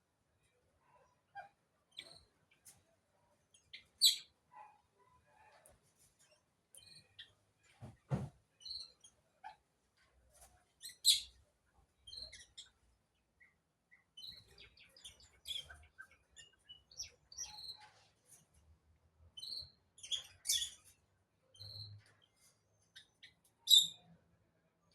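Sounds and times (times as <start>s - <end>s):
birds chirping: 3.4s - 5.6s, 10.8s - 17.9s, 19.3s - 24.1s.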